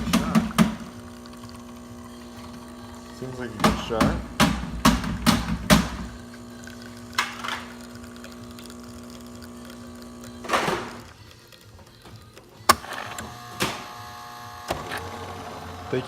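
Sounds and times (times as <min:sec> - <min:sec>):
espresso machine knocks: 0:00.0 - 0:00.9, 0:03.5 - 0:06.2
espresso machine humming: 0:00.0 - 0:16.0.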